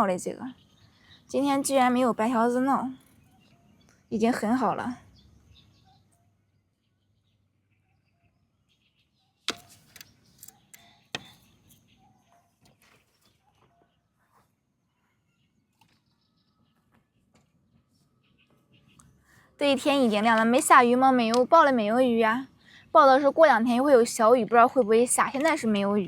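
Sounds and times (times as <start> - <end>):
faint bird chirps: 0.1 - 20.7.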